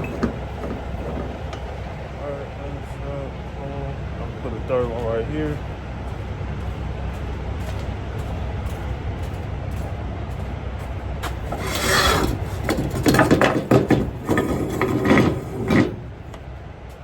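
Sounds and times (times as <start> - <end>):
steady low hum: 0.0 - 17.0
strap webbing rubbing and sliding: 11.5 - 13.0.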